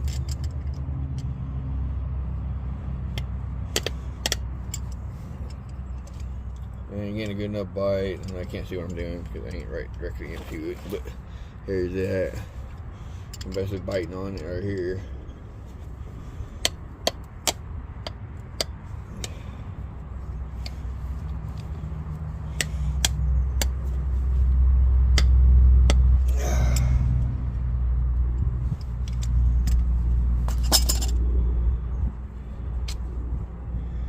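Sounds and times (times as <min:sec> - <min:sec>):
low rumble: 0:18.8 - 0:34.0.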